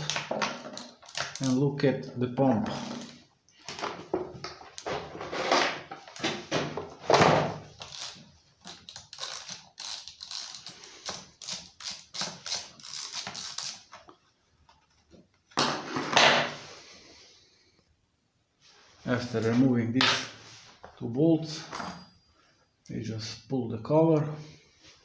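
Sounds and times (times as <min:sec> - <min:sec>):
wrench clicking and scraping metal: 0:00.0 - 0:01.6, 0:02.6 - 0:03.2, 0:07.7 - 0:14.0.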